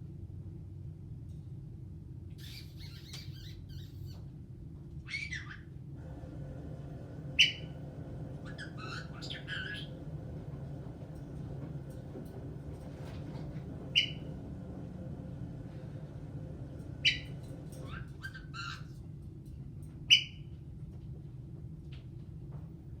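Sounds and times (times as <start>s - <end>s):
steady low hum: 0.0s - 23.0s
parrot chirps: 2.4s - 4.2s, 5.1s - 5.7s, 7.4s - 7.8s, 13.9s - 14.3s, 17.0s - 18.9s
parrot squawking: 2.4s - 4.2s, 5.1s - 5.7s, 7.4s - 7.8s, 8.4s - 9.9s, 13.9s - 14.3s, 17.0s - 18.9s.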